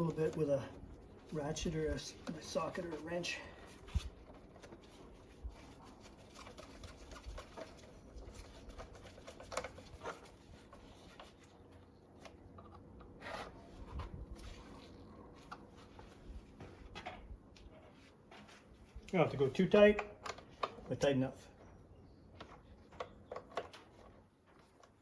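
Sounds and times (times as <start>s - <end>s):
hand tools clicking and tapping: 22.3s - 25.0s.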